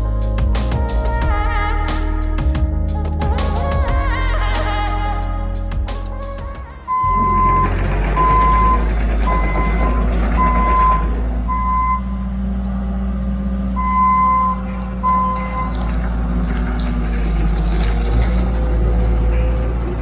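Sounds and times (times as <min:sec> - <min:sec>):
machine engine rumble: 0:00.0 - 0:20.0
backup alarm beeping: 0:06.8 - 0:12.2, 0:13.8 - 0:15.7.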